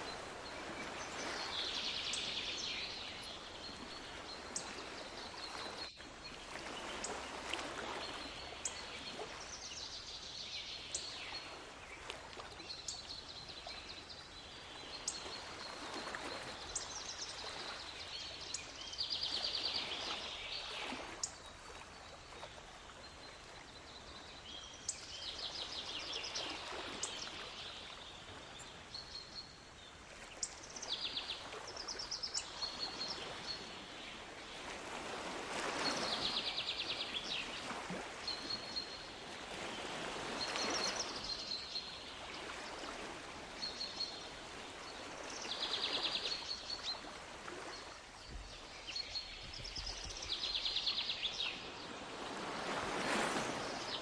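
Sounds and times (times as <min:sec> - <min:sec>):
waves washing in: 0:30.2 - 0:49.0, 0:49.6 - 0:54.0.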